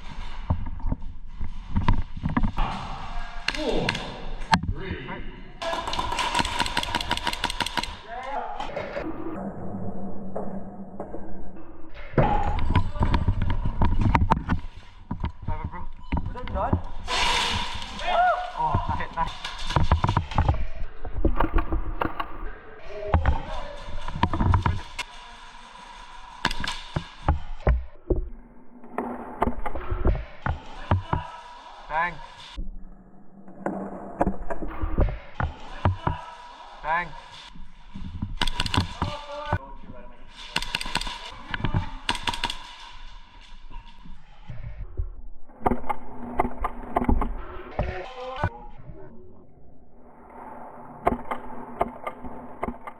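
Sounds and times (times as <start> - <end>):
airsoft guns firing: 5.6 - 8.0, 38.4 - 39.1, 41.9 - 42.9.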